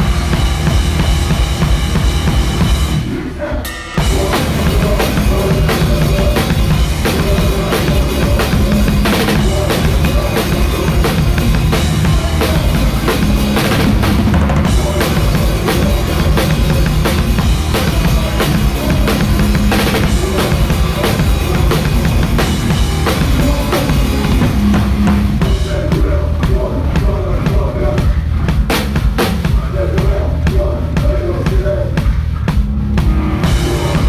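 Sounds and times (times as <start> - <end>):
crashing cymbals: 0.0 - 6.0
drum kit kick and snare: 0.0 - 34.0
punk band playing live: 0.0 - 34.0.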